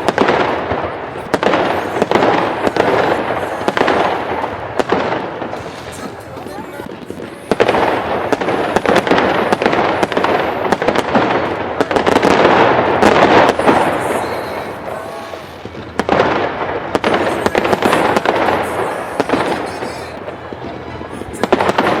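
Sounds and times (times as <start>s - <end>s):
fireworks bangs and crackling: 0.0s - 22.0s.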